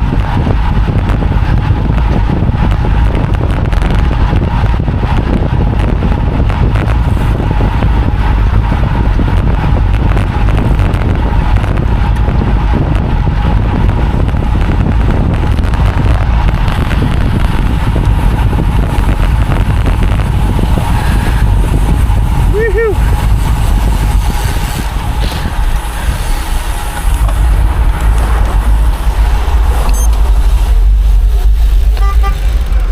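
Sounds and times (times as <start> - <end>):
wind rushing on microphone: 0.0 - 32.9.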